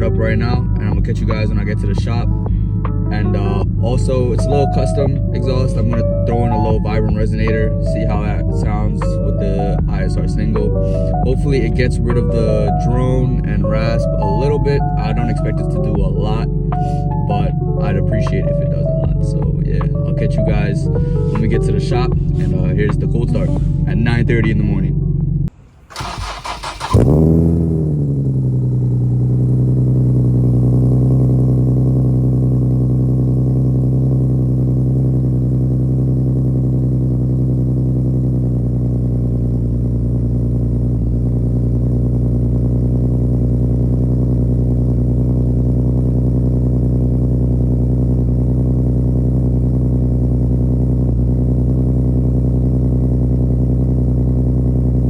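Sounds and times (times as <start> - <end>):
car engine cold starting: 0.0 - 55.0
starter motor cranking: 25.7 - 27.6.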